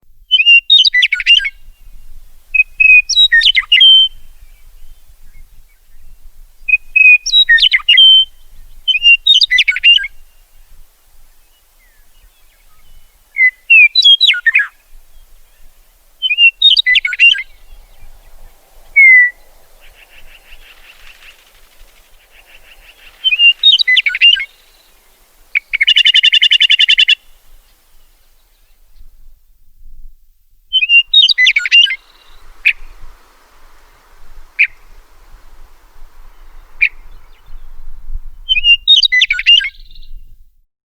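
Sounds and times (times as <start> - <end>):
meadowlark singing: 0.2 - 29.1, 30.7 - 40.4.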